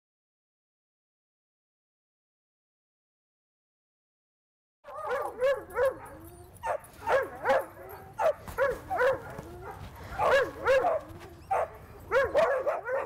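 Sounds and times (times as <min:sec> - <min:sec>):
dogs barking and yipping: 0:04.9 - 0:13.0.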